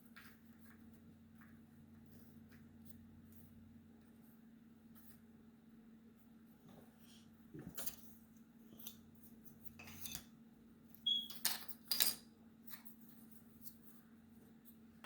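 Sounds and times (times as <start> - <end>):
faint steady hum: 0.0 - 15.0.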